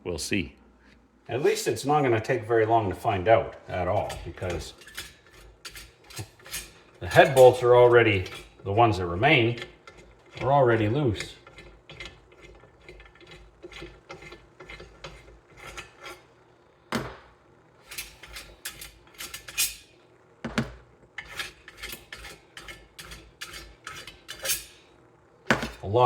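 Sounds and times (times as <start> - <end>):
hand tools clinking on metal: 3.8 - 8.5.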